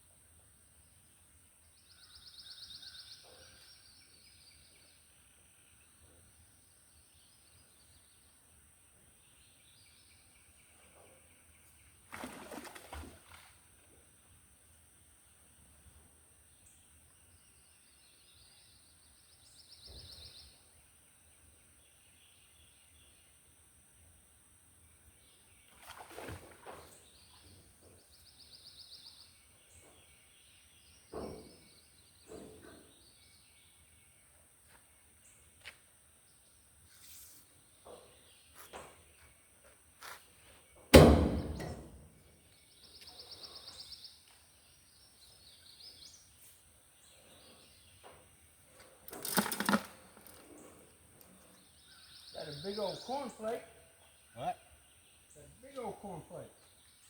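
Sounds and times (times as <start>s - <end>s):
small birds chirping: 16.5s - 24.2s, 24.8s - 57.0s
magnet knocking on rocks: 49.1s - 50.3s.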